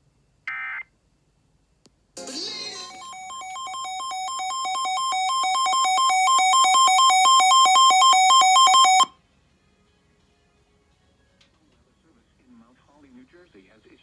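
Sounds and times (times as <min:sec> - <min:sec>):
two-pitch electronic alarm beeps: 0:02.8 - 0:09.1.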